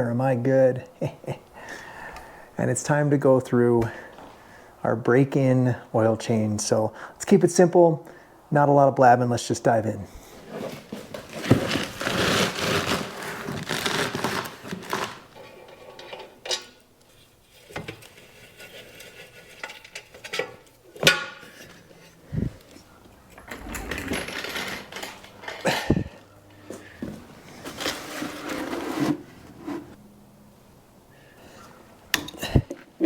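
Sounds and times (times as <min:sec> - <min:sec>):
rustling: 0:10.2 - 0:16.0, 0:17.0 - 0:30.0.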